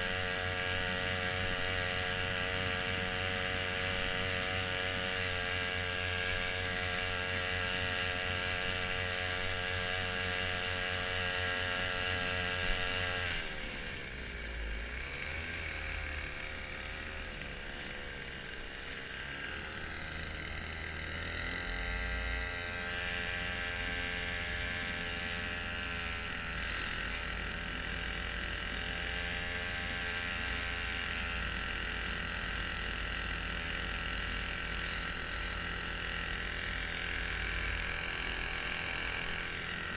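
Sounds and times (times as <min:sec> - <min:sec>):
small boat motor running: 0:00.0 - 0:39.9.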